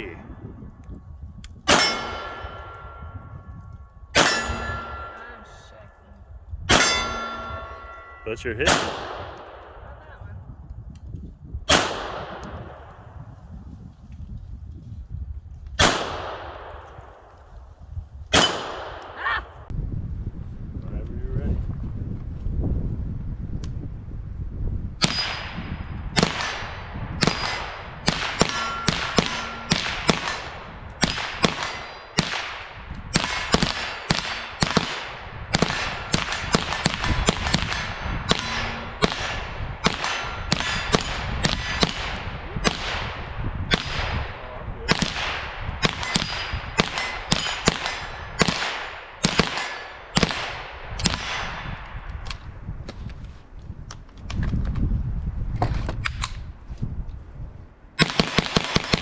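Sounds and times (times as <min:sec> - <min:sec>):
handgun shots: 0:01.7 - 0:03.1, 0:04.2 - 0:05.6, 0:06.7 - 0:09.8, 0:11.7 - 0:13.0, 0:15.8 - 0:17.3, 0:18.4 - 0:19.6, 0:26.2 - 0:32.6, 0:33.2 - 0:43.1, 0:45.0 - 0:51.5
metallic ring: 0:01.7 - 0:03.6, 0:04.2 - 0:05.7, 0:06.7 - 0:08.9, 0:28.3 - 0:30.6, 0:35.8 - 0:39.1.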